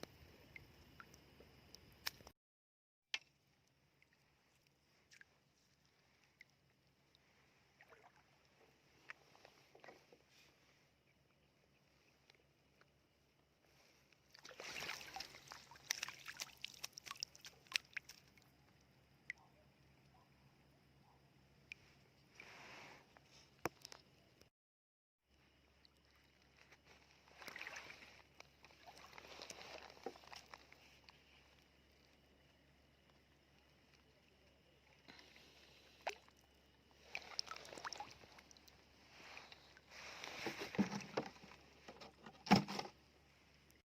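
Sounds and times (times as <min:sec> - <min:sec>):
small splashes and clicks: 0:00.4 - 0:02.3, 0:03.1 - 0:10.3, 0:11.1 - 0:20.1, 0:21.6 - 0:22.5, 0:23.1 - 0:24.5, 0:25.6 - 0:43.0
water sloshing: 0:07.7 - 0:10.2, 0:14.3 - 0:18.5, 0:26.0 - 0:31.2, 0:34.9 - 0:42.9
clicks in seawater: 0:14.1 - 0:18.6, 0:26.3 - 0:31.6, 0:37.0 - 0:43.0.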